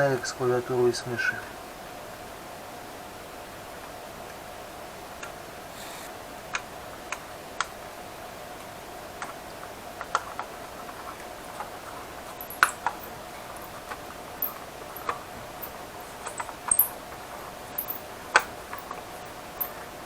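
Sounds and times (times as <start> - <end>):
faint steady hum: 0.0 - 20.0
small laptop parts clicking: 9.2 - 19.8.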